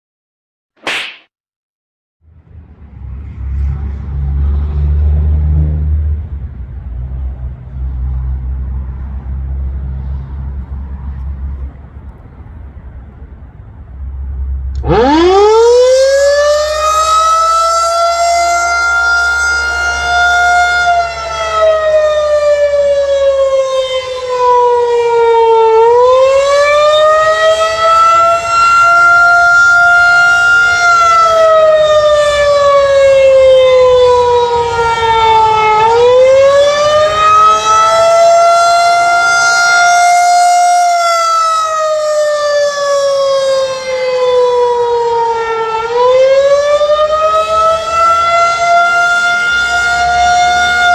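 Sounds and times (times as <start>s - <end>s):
warning siren wailing: 14.7s - 50.9s.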